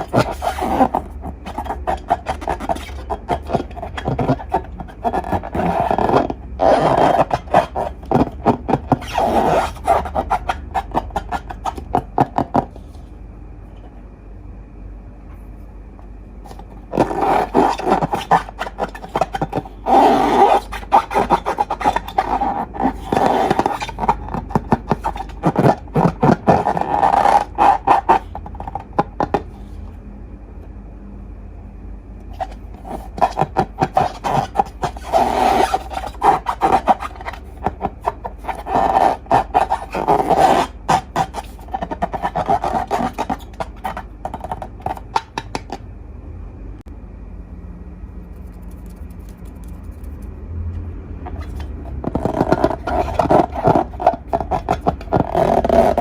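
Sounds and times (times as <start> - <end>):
slime squishing: 0.0 - 13.0, 16.5 - 29.8, 32.3 - 45.8, 51.3 - 56.0.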